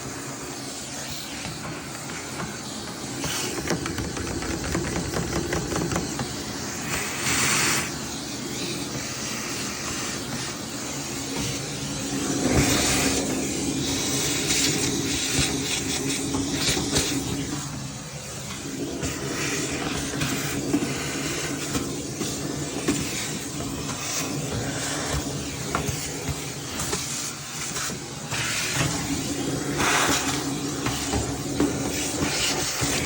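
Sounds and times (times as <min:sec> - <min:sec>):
rushing hissing air: 0:00.0 - 0:33.0.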